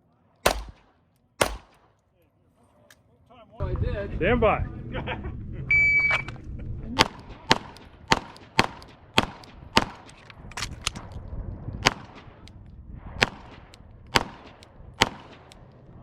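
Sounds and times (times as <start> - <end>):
pistol shots: 0.4 - 2.0, 7.0 - 10.3, 11.8 - 12.6, 13.2 - 15.8.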